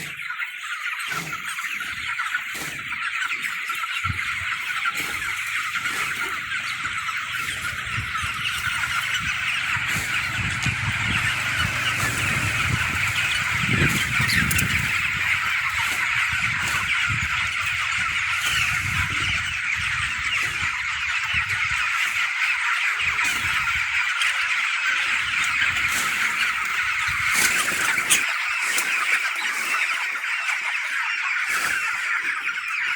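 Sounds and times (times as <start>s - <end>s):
chickens chirping and clucking: 0.0s - 32.9s
low rumble: 7.4s - 15.0s.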